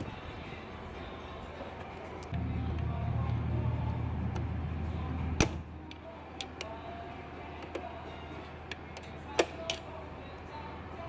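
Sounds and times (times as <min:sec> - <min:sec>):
low hum: 0:02.3 - 0:07.4.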